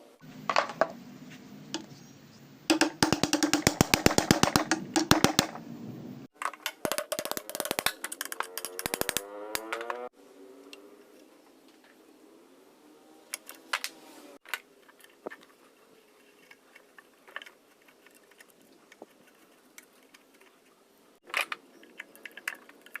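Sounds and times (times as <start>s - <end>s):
sewing machine clicking rapidly: 3.0s - 5.6s.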